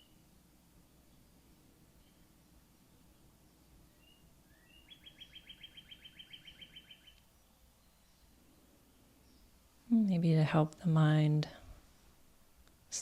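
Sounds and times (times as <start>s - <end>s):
songbird chirping and trilling: 0.0s - 9.6s.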